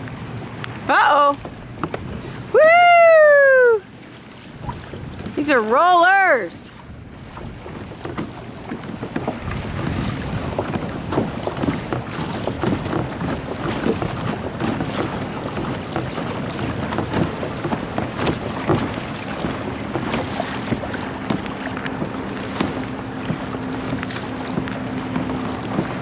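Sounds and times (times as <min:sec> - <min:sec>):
water splashing against kayak hull: 0:00.0 - 0:26.0
wind buffeting microphone: 0:00.0 - 0:26.0.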